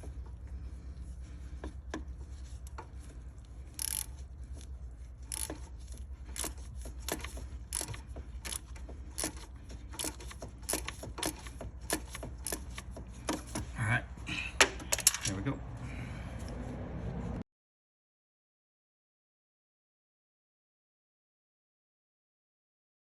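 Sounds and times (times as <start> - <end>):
steady low hum: 0.0 - 17.4
hand ratchet clicking: 3.7 - 13.6.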